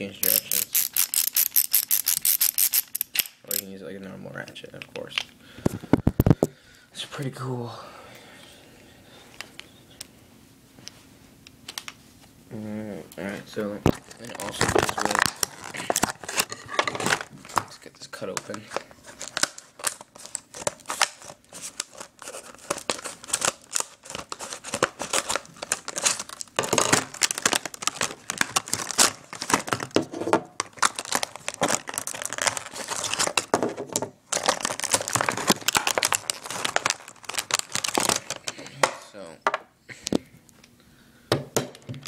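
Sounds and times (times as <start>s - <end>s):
packaging being cut and torn: 13.9s - 17.6s, 19.1s - 30.0s, 30.6s - 33.5s, 34.3s - 38.5s.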